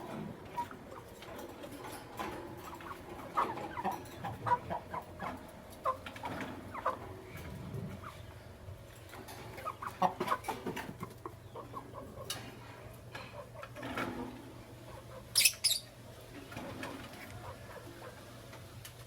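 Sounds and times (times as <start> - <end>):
lovebirds chirping: 15.3 - 16.0.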